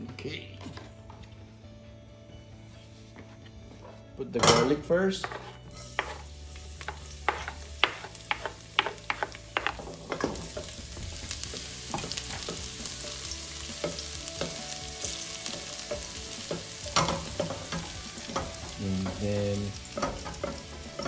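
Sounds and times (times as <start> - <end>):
garlic sizzling in oil: 5.1 - 21.0.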